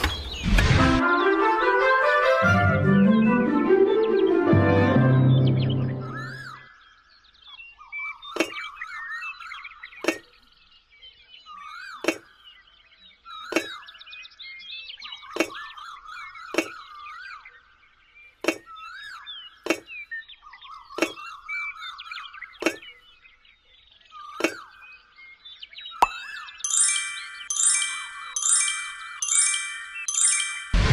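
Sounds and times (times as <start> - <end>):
warbling bird-like whistling: 26.0 - 30.8
sharp clinking strike: 26.0 - 30.9.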